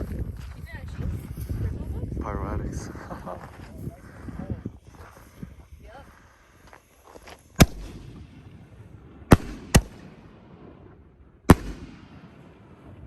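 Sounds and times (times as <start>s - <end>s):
firework shells booming: 7.5s - 13.0s
rolling echo: 7.6s - 13.0s.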